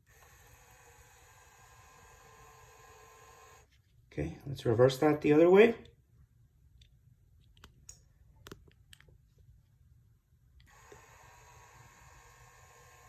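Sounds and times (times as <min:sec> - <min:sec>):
mirror motor whirring: 0:00.0 - 0:03.7, 0:10.6 - 0:13.0.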